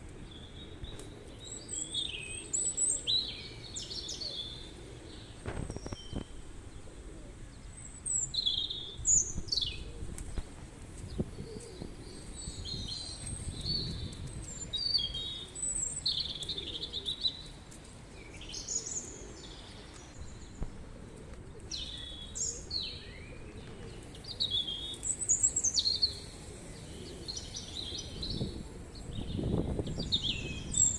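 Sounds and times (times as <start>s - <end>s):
small birds chirping: 0.2s - 20.8s, 21.7s - 30.9s.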